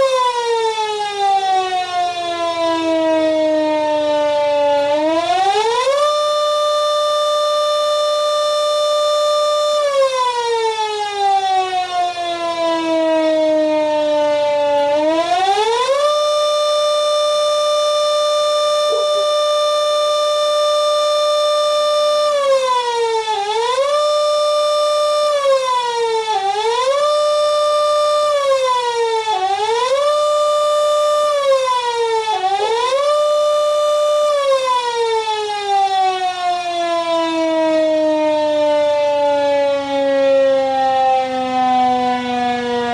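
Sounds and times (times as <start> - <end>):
electric rotary siren winding: 14.6 - 22.8.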